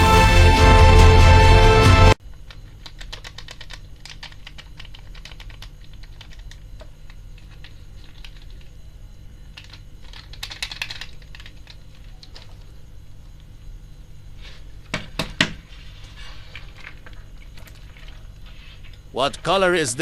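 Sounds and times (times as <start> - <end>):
small plastic objects clicking: 2.4 - 8.7, 9.4 - 12.7.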